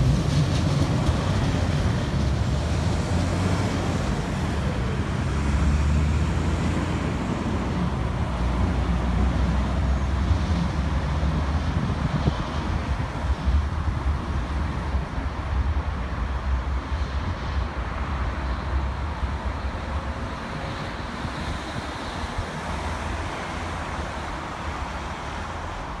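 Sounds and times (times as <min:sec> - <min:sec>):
tram rumbling: 0:00.0 - 0:26.0.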